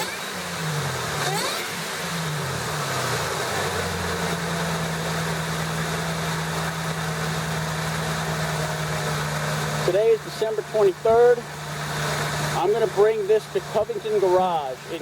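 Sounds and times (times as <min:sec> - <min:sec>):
supercharged engine running: 0:00.0 - 0:15.0.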